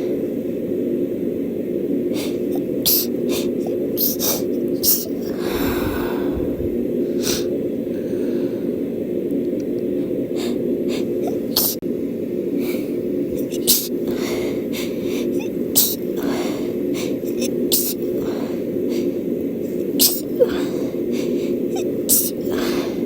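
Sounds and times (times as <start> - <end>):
steady low hum: 0.0 - 23.0
person sniffing through congested nose: 2.1 - 6.4, 7.1 - 8.3, 10.4 - 11.8, 12.6 - 23.0.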